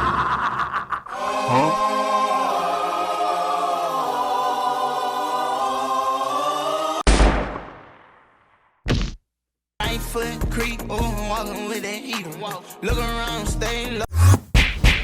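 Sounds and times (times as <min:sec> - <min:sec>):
choir singing a sustained chord: 0:01.1 - 0:07.0.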